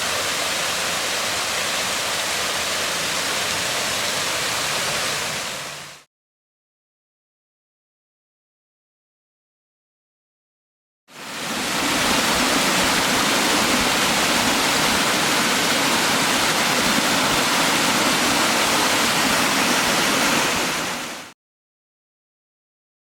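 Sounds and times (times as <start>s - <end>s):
waterfall rushing: 0.0s - 6.1s, 11.1s - 21.4s.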